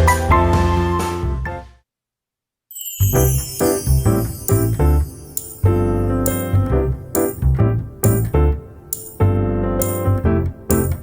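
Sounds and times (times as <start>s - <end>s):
background music with steady beat: 3.6s - 11.0s.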